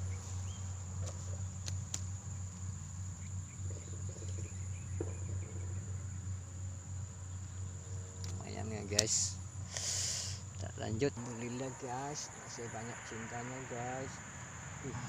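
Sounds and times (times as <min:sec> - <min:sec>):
insects droning: 0:00.0 - 0:15.0
sharp clicks: 0:08.2 - 0:09.2.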